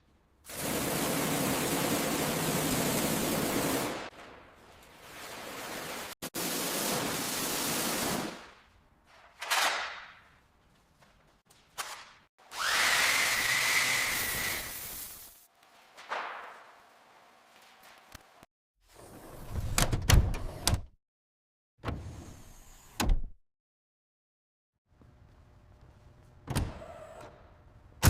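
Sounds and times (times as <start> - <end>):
pressure washer spray hissing: 12.9 - 15.4.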